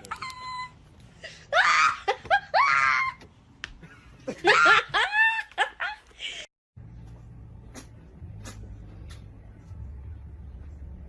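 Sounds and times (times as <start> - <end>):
person laughing hard: 3.9 - 6.5.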